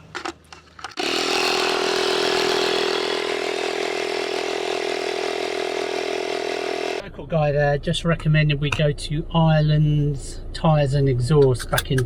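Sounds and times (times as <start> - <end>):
tyre inflator compressor buzzing: 1.0 - 7.0.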